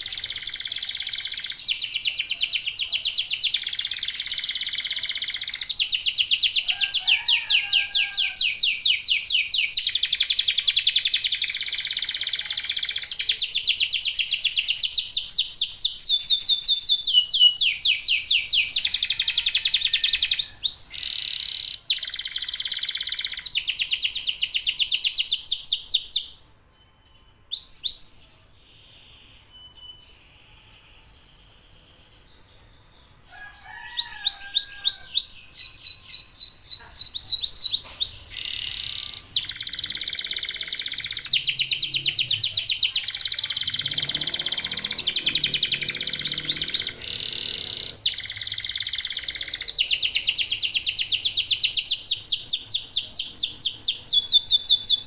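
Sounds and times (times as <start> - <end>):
canaries trilling: 0.0 - 25.2, 33.2 - 55.0.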